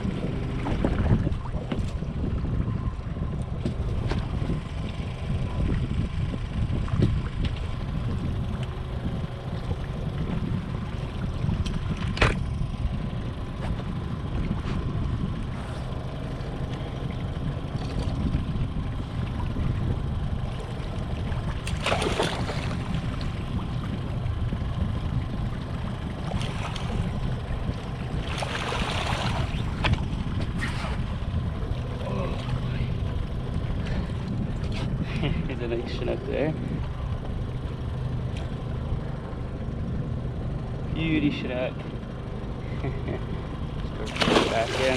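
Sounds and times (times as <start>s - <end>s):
wind noise on microphone: 0.0s - 15.9s, 17.1s - 37.4s
boat motor rumbling: 0.0s - 44.9s
short splashes: 21.4s - 23.8s, 26.2s - 27.2s, 28.2s - 30.0s, 44.0s - 44.9s.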